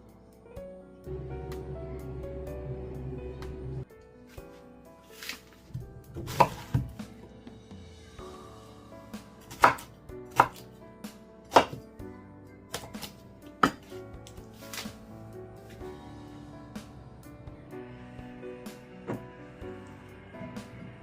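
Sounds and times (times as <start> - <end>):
faint background music: 0.0 - 21.0
knife chopping on cutting board: 6.2 - 6.9, 9.5 - 10.6, 11.5 - 11.8.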